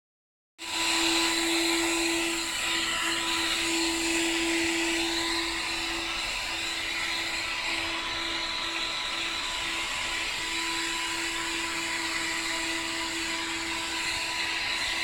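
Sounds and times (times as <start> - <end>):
vacuum cleaner running: 0.6 - 15.0.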